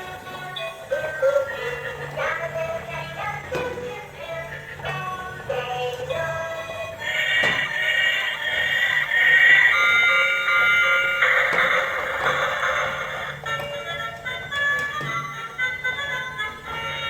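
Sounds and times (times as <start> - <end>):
hiss: 7.0 - 10.5.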